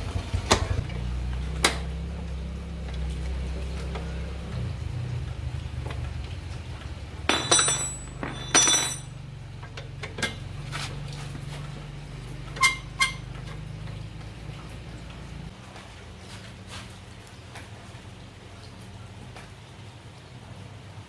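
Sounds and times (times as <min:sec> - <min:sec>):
metal clinking and clattering: 0:06.8 - 0:10.5
sharp ringing metal clinks: 0:07.3 - 0:09.2.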